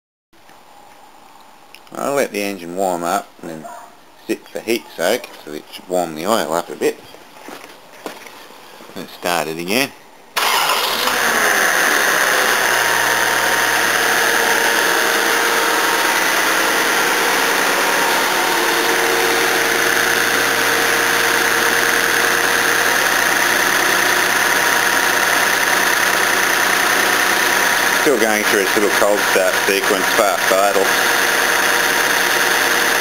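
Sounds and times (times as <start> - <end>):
car engine fast idle: 10.4 - 32.7.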